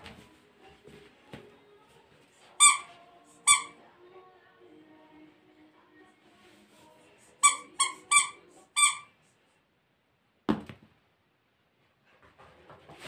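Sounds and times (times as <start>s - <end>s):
squeaky dog toy squeaks: 2.5s - 3.8s, 7.4s - 9.2s.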